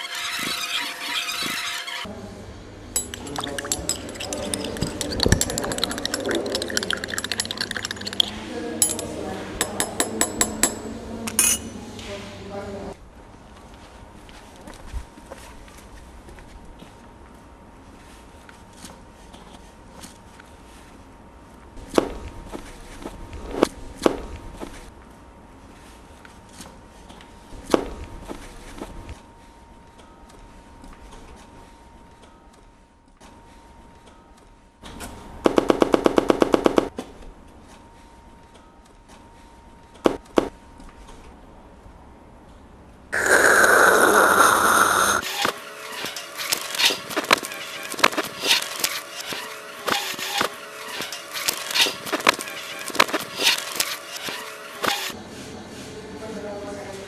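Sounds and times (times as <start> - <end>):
hard objects knocking: 3.0 - 11.6
crockery and glassware clinking: 3.0 - 11.8
hissing noise: 43.2 - 45.6.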